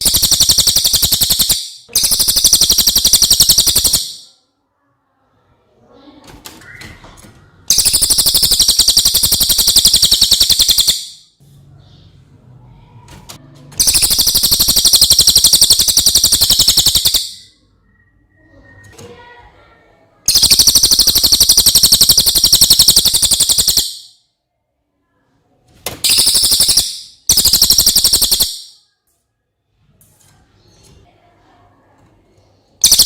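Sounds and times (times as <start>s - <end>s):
songbird rattling trills: 0.0s - 4.2s, 7.7s - 11.3s, 13.8s - 17.5s, 20.3s - 24.1s, 26.0s - 28.7s.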